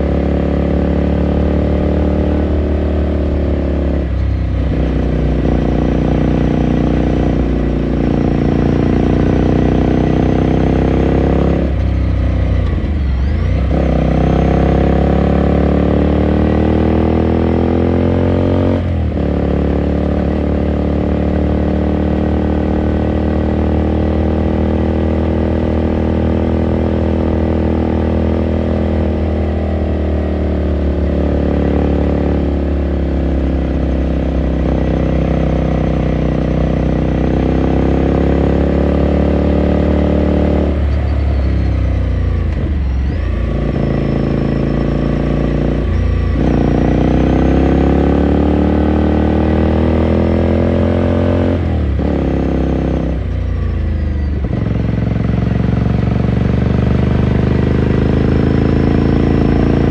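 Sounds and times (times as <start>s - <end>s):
motorcycle engine and exhaust: 0.0s - 59.9s.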